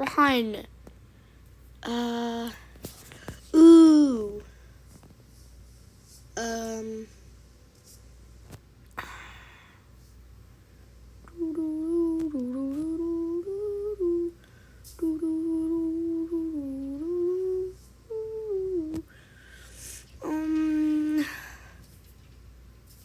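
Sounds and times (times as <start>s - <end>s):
person humming: 3.6s - 4.4s, 11.3s - 14.4s, 15.0s - 19.1s, 20.2s - 21.6s.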